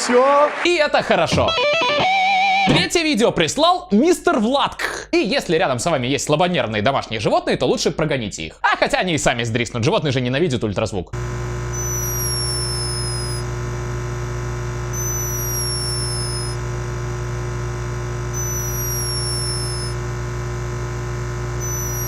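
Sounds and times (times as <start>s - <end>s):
steady low hum: 11.2s - 22.0s
hummingbird snoring squeak: 11.8s - 13.4s, 15.0s - 16.6s, 18.4s - 20.0s, 21.6s - 22.0s.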